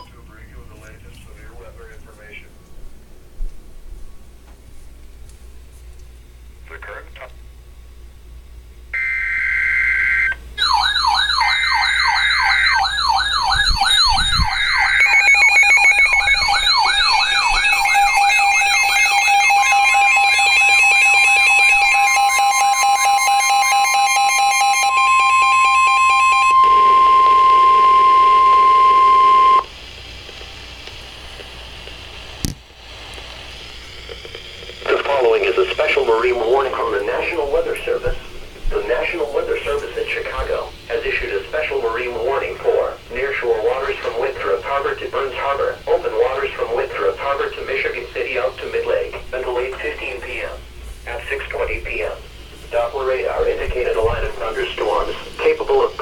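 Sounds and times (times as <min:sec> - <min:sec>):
steady alert tones: 0:09.0 - 0:29.6
screeching data bursts: 0:09.0 - 0:29.7
wailing siren: 0:09.0 - 0:29.7
low hiss: 0:26.5 - 0:56.0.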